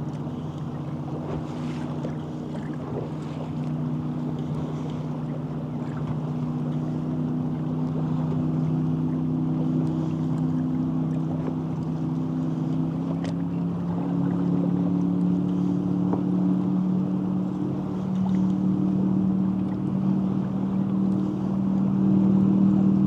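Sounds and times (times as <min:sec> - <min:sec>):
boat motor running: 0:00.0 - 0:23.0.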